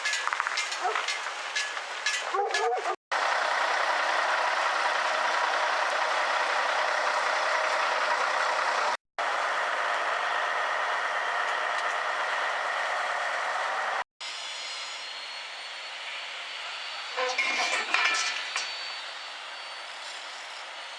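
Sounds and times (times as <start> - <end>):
diesel truck engine running: 0.0 - 14.0.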